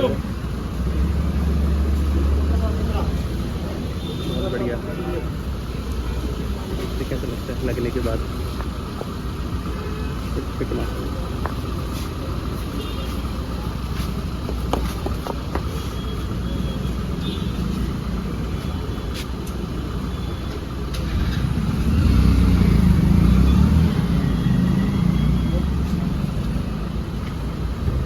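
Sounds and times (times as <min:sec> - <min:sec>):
vehicle engine rumbling: 0:00.0 - 0:28.0.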